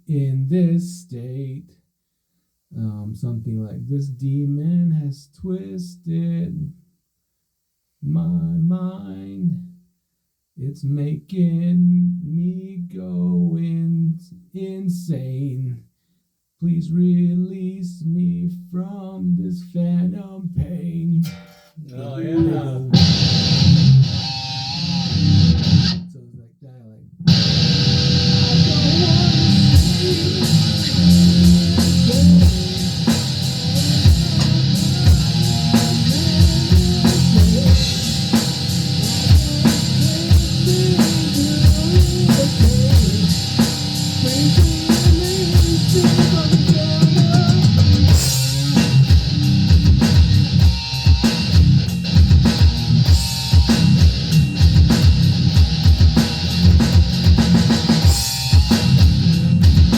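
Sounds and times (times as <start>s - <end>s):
electric guitar: 22.3s - 26.0s, 27.3s - 59.9s
drum kit playing a steady beat: 22.4s - 24.4s, 27.3s - 59.9s.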